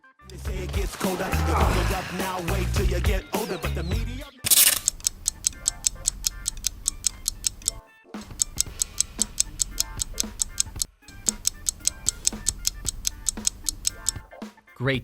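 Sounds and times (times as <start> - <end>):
clock-like ticking: 4.5 - 14.2
low backing music: 5.0 - 14.5.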